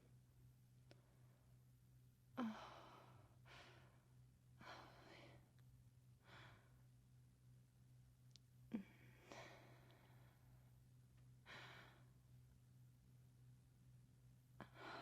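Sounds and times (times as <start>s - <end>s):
faint steady hum: 0.0s - 15.0s
woman breathing softly: 2.4s - 5.6s, 6.2s - 7.0s, 8.7s - 12.3s, 14.6s - 15.0s.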